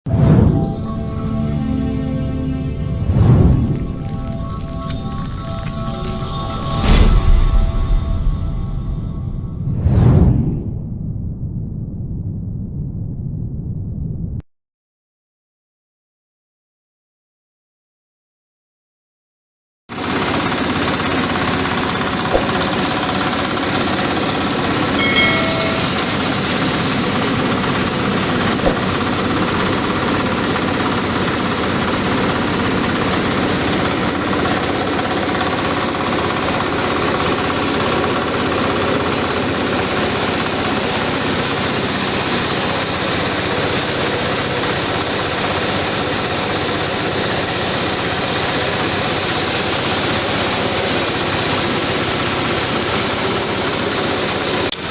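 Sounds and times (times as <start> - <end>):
huller machine running: 20.0 - 54.9.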